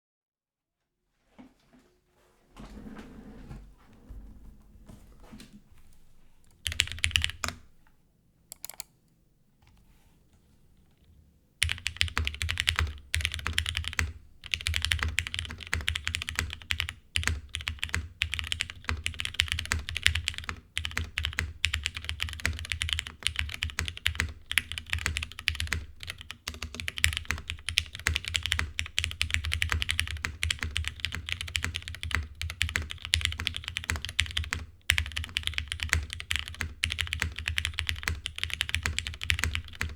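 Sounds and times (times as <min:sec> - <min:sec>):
typing on mechanical keyboard: 0:06.6 - 0:07.7, 0:08.5 - 0:08.9, 0:11.6 - 0:39.9.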